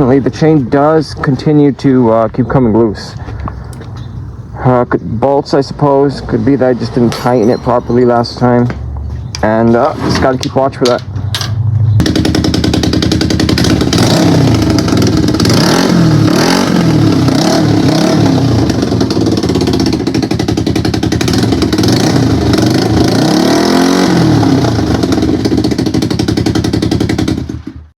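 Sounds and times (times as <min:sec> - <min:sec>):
motorcycle engine revving: 0:08.6 - 0:27.9.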